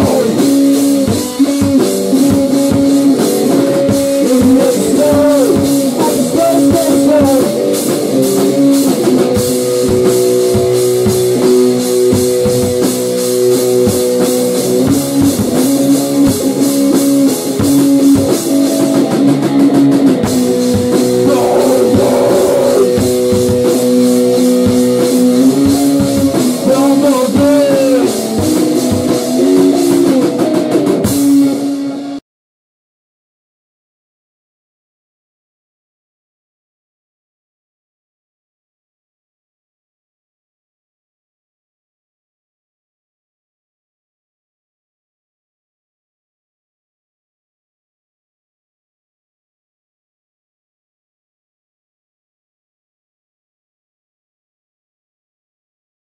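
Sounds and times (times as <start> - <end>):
loud rock music: 0.0 - 32.2.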